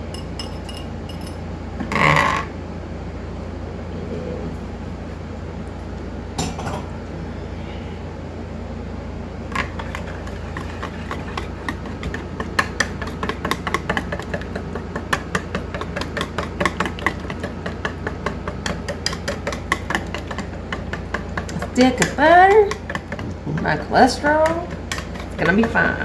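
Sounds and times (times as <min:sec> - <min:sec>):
steady low hum: 0:00.0 - 0:26.0
utensil tapping a dish: 0:09.6 - 0:26.0.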